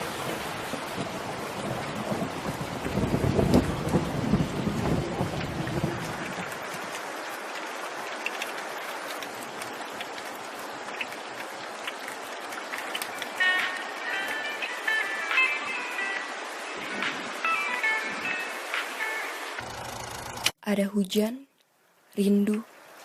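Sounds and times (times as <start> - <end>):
low thunder rumble: 0.0 - 6.6
steady rain: 0.0 - 20.6, 21.6 - 23.0
drip-like ticks: 5.6 - 15.4.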